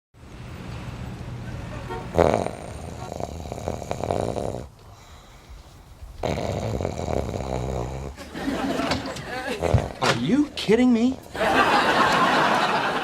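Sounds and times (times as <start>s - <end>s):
man snoring: 2.1s - 5.2s, 6.2s - 8.2s, 9.5s - 10.0s.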